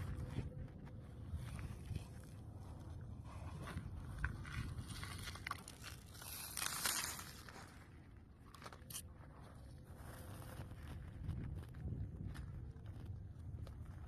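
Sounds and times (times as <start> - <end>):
wind buffeting microphone: 0.0 - 5.6, 9.2 - 14.0.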